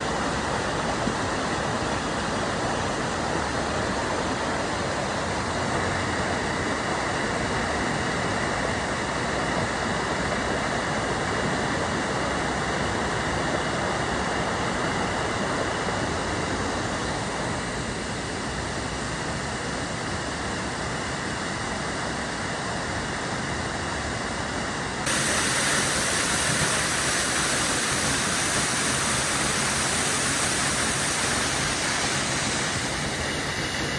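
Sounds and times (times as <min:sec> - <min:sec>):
waterfall rushing: 0:25.1 - 0:33.9.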